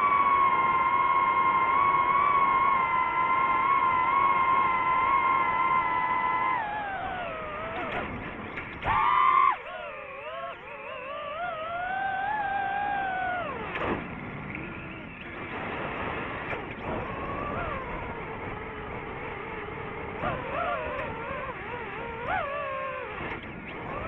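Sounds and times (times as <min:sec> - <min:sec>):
drone propellers whining: 0:00.0 - 0:24.0.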